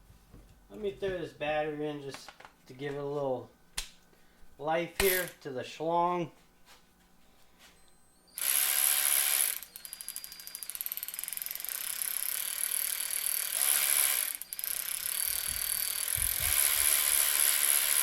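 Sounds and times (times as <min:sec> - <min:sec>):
cordless ratchet whirring and clicking: 0:05.0 - 0:05.4, 0:08.4 - 0:18.0.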